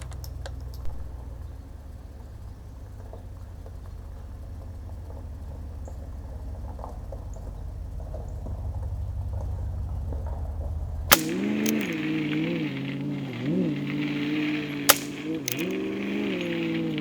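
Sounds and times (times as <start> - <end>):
low steady rumble: 0.0 - 17.0
rifle shot crack: 11.1 - 17.0.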